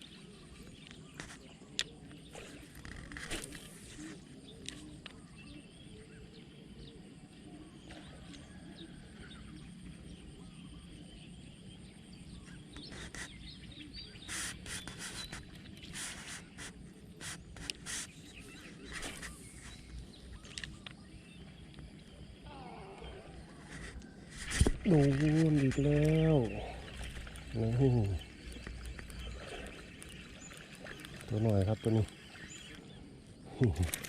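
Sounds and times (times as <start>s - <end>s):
faint bird chirps: 0.0s - 34.0s
rustling noises: 12.8s - 13.4s, 14.1s - 20.8s, 23.4s - 32.2s.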